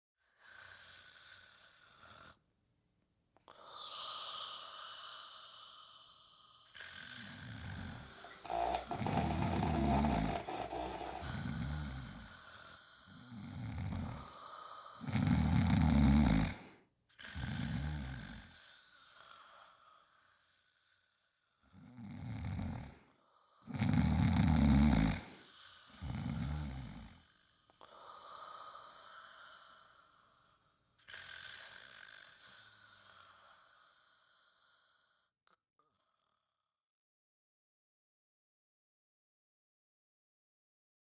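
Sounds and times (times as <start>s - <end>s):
quiet breathing: 0.2s - 2.5s, 3.4s - 36.5s
person snoring heavily: 3.6s - 19.8s, 21.8s - 23.0s, 23.7s - 35.1s.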